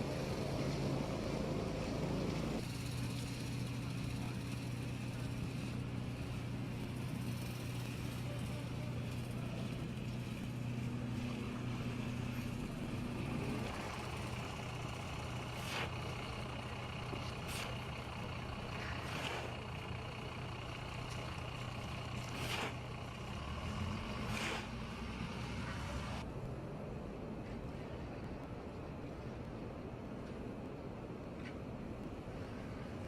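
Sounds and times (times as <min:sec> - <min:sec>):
vehicles swishing past: 0:00.0 - 0:26.3
vehicle engine humming: 0:00.0 - 0:29.0
background traffic rush: 0:00.0 - 0:33.0.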